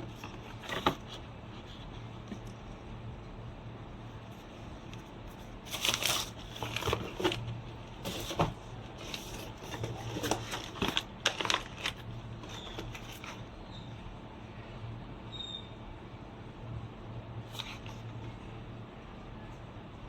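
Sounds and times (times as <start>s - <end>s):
packet crinkling and clicking: 5.7s - 8.4s, 9.0s - 13.4s.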